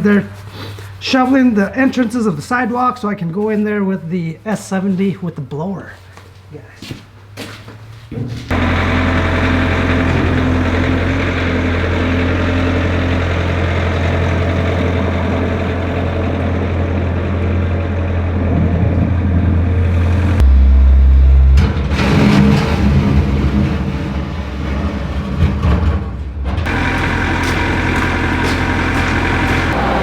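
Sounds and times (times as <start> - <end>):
vehicle engine running: 7.1 - 25.6, 26.6 - 30.0.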